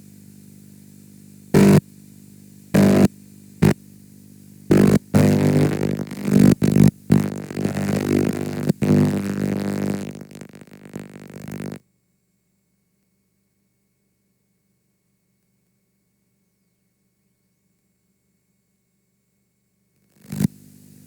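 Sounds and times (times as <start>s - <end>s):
buzzing hum: 1.5s - 1.9s, 2.7s - 3.8s, 4.4s - 11.8s, 20.2s - 21.0s
distorted noise bursts: 1.6s - 1.8s, 2.8s - 3.8s, 4.7s - 11.8s, 20.2s - 20.5s.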